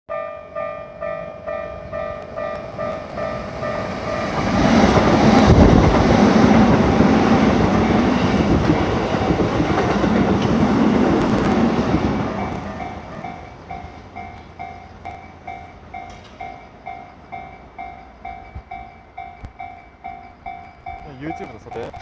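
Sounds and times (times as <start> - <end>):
level-crossing warning bell ringing: 0.1 - 6.0, 12.3 - 22.0
train rumble and wheel noise: 0.1 - 22.0.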